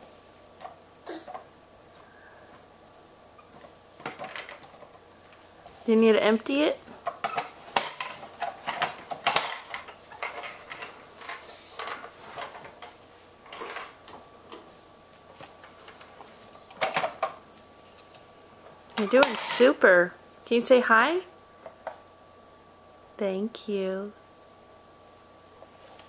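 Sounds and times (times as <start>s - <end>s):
vacuum cleaner being handled: 3.5s - 5.0s, 7.0s - 14.0s.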